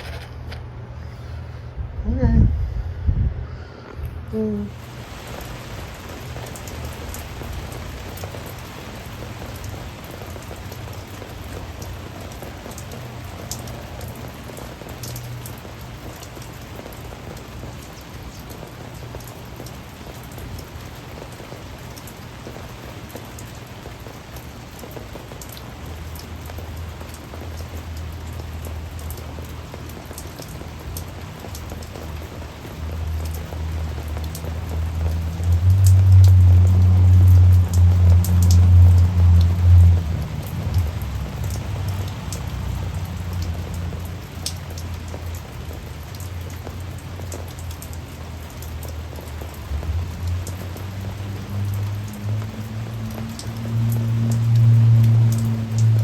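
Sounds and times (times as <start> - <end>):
low steady hum: 0.0 - 8.7
heavy rain: 3.7 - 56.0
raindrops ticking on surfaces: 4.0 - 56.0.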